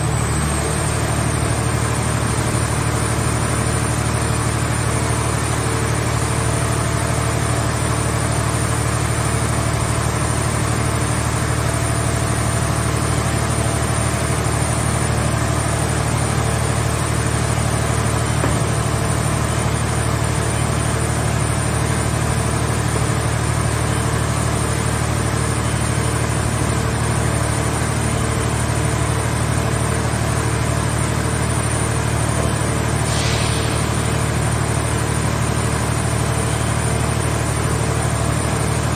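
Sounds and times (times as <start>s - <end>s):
hydraulic power unit humming: 0.0s - 38.9s
brief hiss: 33.0s - 34.4s.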